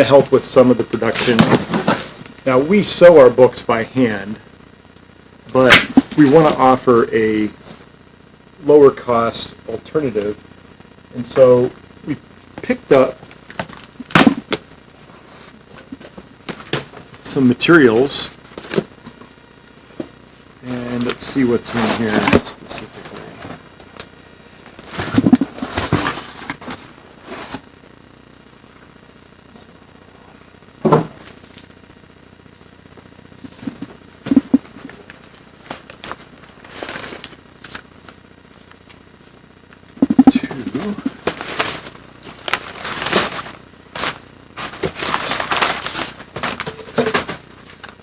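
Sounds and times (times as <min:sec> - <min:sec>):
packing material and cardboard rustling: 0:00.0 - 0:02.6, 0:12.6 - 0:19.2, 0:20.6 - 0:24.1, 0:24.8 - 0:27.7, 0:33.4 - 0:39.0, 0:40.1 - 0:48.0
cardboard rustling and scraping: 0:01.1 - 0:02.2, 0:21.7 - 0:22.4, 0:24.8 - 0:27.6, 0:40.6 - 0:48.0.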